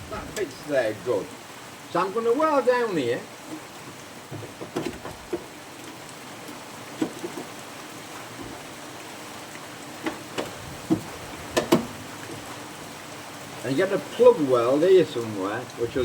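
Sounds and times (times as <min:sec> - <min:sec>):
rain hiss: 0:00.0 - 0:16.0
light knocks and taps: 0:03.5 - 0:05.5, 0:06.5 - 0:07.5, 0:08.4 - 0:08.6, 0:10.0 - 0:12.4.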